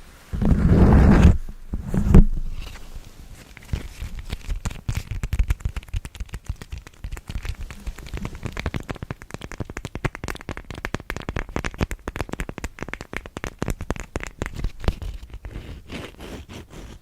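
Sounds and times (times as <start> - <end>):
muffled rubbing thumps: 0.0 - 5.3
light crackly taps: 3.6 - 15.4.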